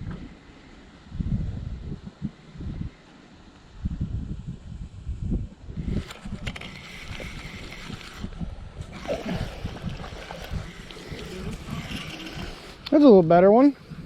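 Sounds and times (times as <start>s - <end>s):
wind buffeting microphone: 1.0s - 3.0s, 3.7s - 14.0s
water splashing and sloshing: 6.0s - 13.2s.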